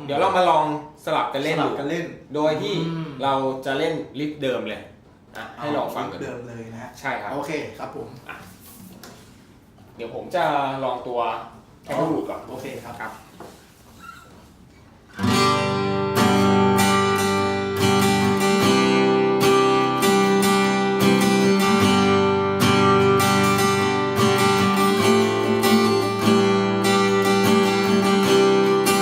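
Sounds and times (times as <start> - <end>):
acoustic guitar strummed chords: 15.2 - 29.0.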